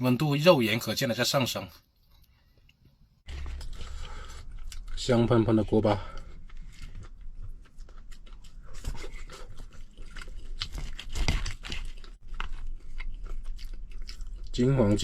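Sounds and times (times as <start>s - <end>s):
chewing crunchy rice crust: 3.3s - 5.1s, 6.1s - 15.0s.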